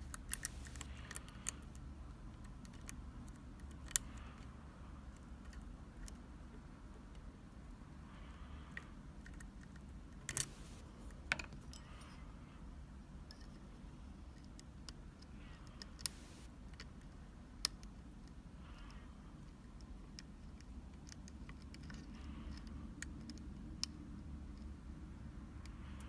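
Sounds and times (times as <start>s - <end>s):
lock picks clicking in lock: 9.2s - 10.5s.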